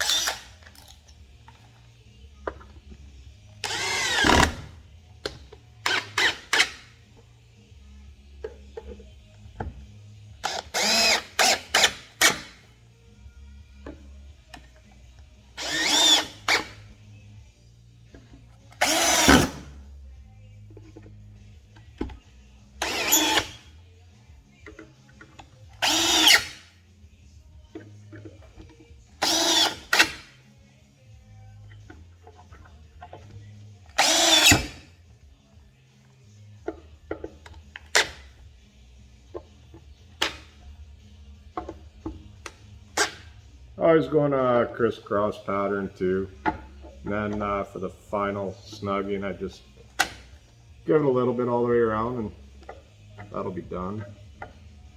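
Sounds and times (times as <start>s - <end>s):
power drill driving screws: 0.0s - 1.7s, 2.4s - 7.2s, 10.3s - 12.7s, 13.8s - 17.0s, 18.6s - 19.8s, 22.7s - 23.8s, 24.7s - 26.7s, 29.1s - 30.4s, 31.7s - 34.9s, 37.1s - 38.4s, 43.0s - 43.4s.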